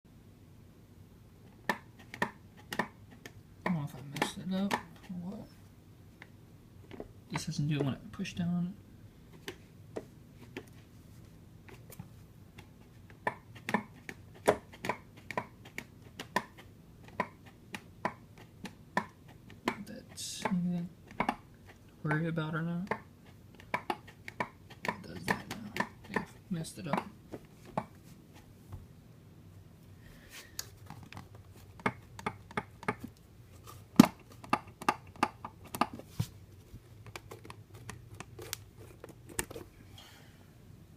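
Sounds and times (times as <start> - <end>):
pad clicking by hand: 1.6 - 4.9, 12.6 - 19.8, 20.4 - 21.4, 22.9 - 26.3, 30.9 - 33.1, 34.0 - 36.0.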